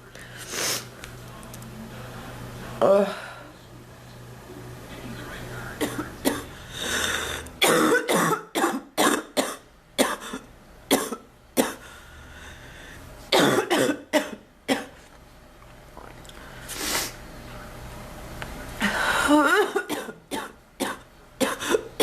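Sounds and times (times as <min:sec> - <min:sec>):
woman coughing: 0:05.8 - 0:06.5, 0:07.6 - 0:11.8, 0:13.4 - 0:14.9, 0:19.2 - 0:22.0.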